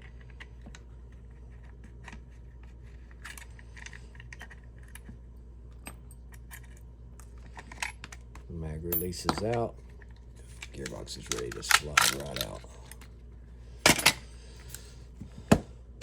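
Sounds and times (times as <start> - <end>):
steady low hum: 0.0 - 16.0
allen key clicking and scraping metal: 10.4 - 13.1.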